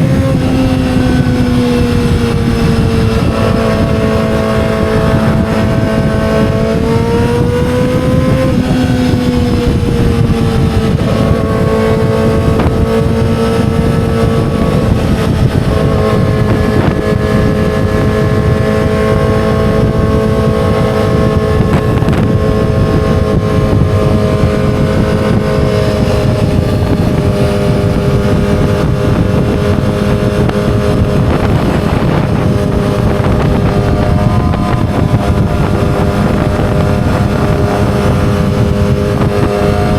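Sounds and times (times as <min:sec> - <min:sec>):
motorcycle engine running loud: 0:00.0 - 0:39.9
steady rush of noise: 0:00.0 - 0:39.9.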